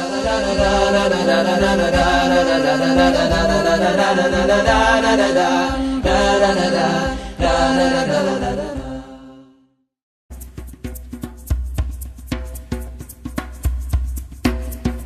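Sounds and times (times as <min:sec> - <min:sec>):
low vocal drone: 0:00.0 - 0:09.6
voices chanting a cappella: 0:00.0 - 0:09.7.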